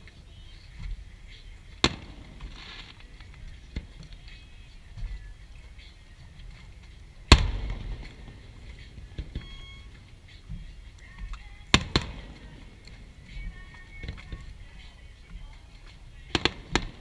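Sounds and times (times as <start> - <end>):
fireworks booming: 1.8 - 3.1, 7.3 - 9.4, 11.7 - 14.3, 16.3 - 17.0
sharp firework bangs: 7.3 - 8.2.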